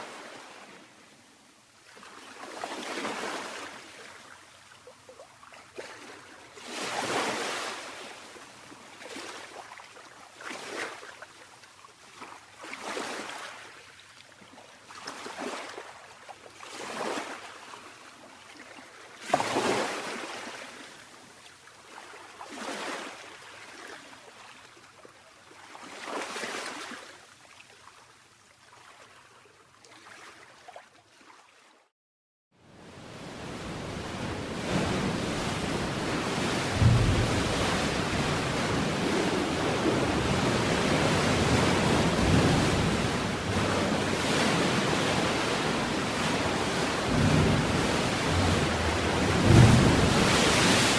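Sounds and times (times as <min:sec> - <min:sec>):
small waves lapping: 0:01.8 - 0:31.8, 0:32.8 - 0:50.9
steady surf: 0:32.9 - 0:50.9.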